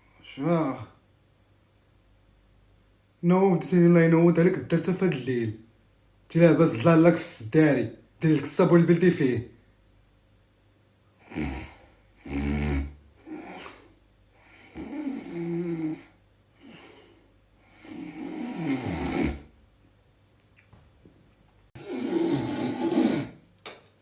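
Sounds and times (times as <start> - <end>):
person snoring loudly: 11.2 - 19.5, 21.8 - 23.4.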